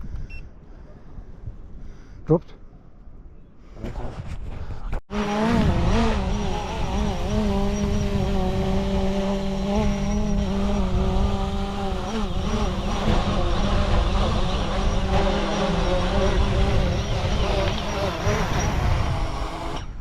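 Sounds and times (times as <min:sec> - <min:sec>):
wind rumble on microphone: 0:03.7 - 0:20.0
drone propellers whirring: 0:05.1 - 0:20.0.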